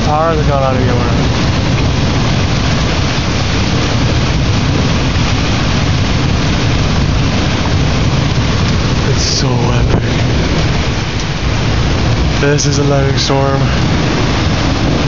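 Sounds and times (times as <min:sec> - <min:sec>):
heavy rain: 0:00.0 - 0:15.0
low thunder rumble: 0:00.0 - 0:15.0.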